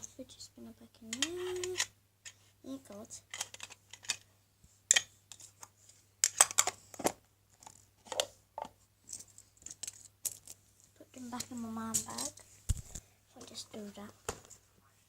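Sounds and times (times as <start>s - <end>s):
fidget spinners clicking and rustling: 1.0s - 4.2s.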